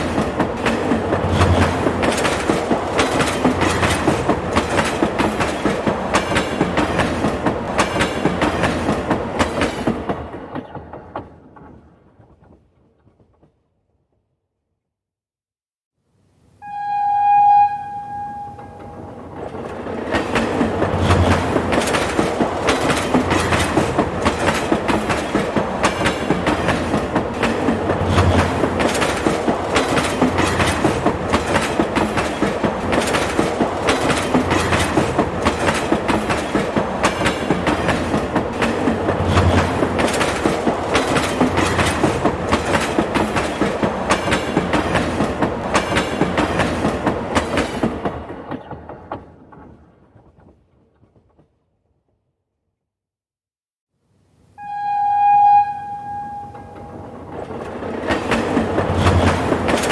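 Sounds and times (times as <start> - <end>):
train wheels clattering over rails: 0.0 - 13.6, 18.6 - 51.6, 56.3 - 59.9
train horn blast: 16.6 - 19.4, 54.6 - 57.3.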